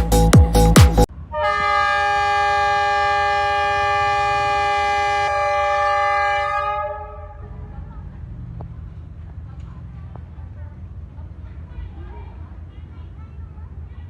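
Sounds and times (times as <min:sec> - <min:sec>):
locomotive air horn blast: 0:01.3 - 0:07.6.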